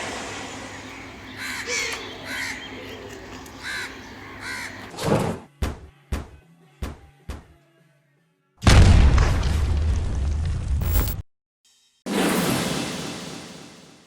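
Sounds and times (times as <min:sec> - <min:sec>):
bird cawing: 0:00.7 - 0:04.9.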